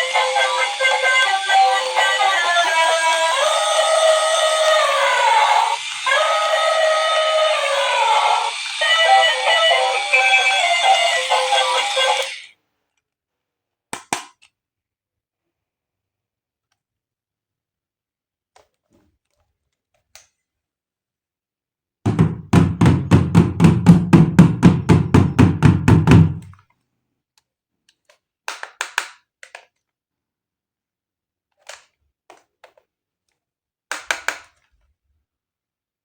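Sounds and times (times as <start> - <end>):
rapid knocks: 22.1 - 26.5.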